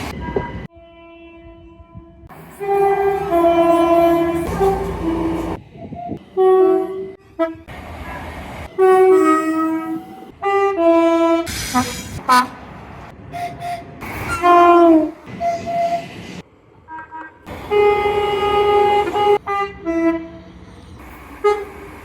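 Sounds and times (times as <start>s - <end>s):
train rumble: 0.0s - 22.0s
train horn chords: 0.2s - 5.6s, 6.2s - 7.7s, 8.7s - 12.7s, 13.3s - 16.0s, 16.9s - 20.4s, 21.4s - 21.9s.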